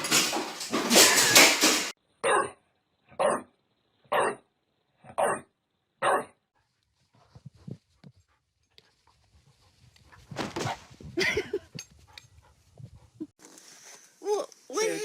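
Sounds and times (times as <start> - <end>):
dog barking: 2.2 - 3.5, 4.1 - 4.5, 5.1 - 6.4.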